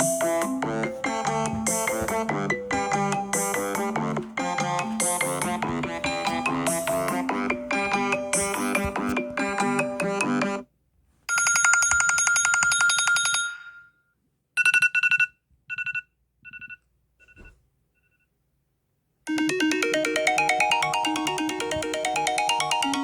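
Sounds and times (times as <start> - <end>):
melodic ringtone: 0.0 - 10.6, 19.3 - 23.0.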